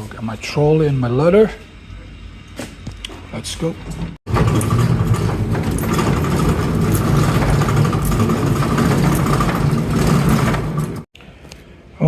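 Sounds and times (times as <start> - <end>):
trolley wheels rumbling on hard floor: 3.8 - 11.1.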